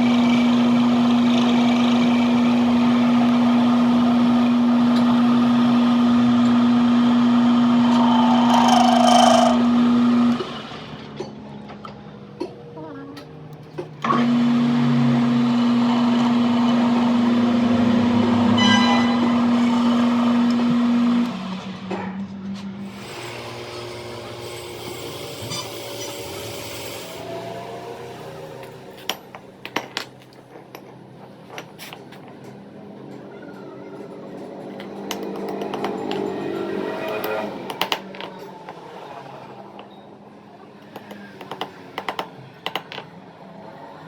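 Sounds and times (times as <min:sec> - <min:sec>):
power tool motor running: 0:00.0 - 0:10.6, 0:22.8 - 0:27.6.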